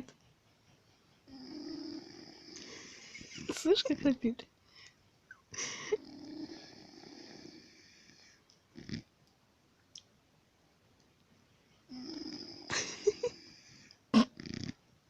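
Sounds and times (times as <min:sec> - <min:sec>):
monkey snoring: 0:01.2 - 0:04.1, 0:05.6 - 0:09.1, 0:11.9 - 0:14.8.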